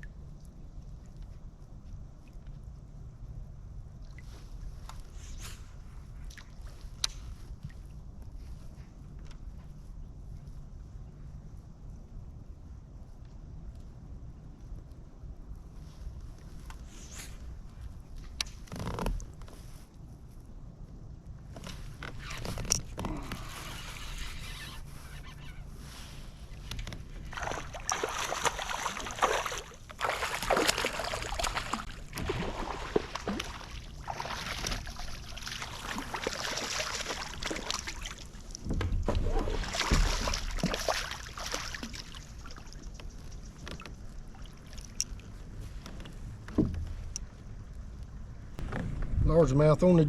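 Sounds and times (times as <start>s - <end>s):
water splashing around kayak: 21.4s - 49.2s.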